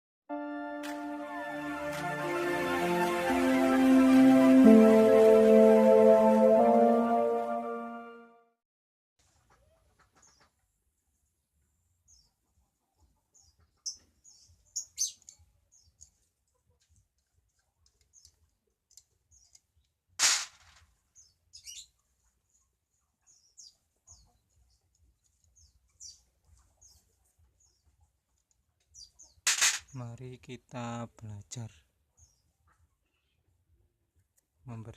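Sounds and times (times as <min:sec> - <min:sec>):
small birds chirping: 0:13.3 - 0:20.0, 0:21.1 - 0:30.0
loud sharp clatter: 0:20.2 - 0:20.9, 0:29.5 - 0:29.9.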